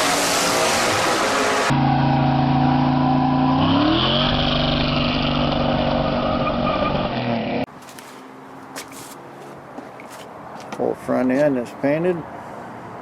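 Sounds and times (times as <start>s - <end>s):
car engine revving: 0.0s - 7.7s.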